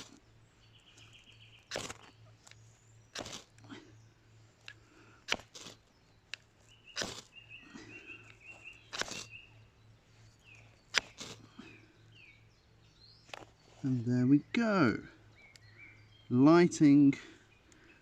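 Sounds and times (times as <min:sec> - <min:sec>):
birds chirping: 0:00.0 - 0:18.0
ferro rod scraping on metal: 0:08.9 - 0:09.4.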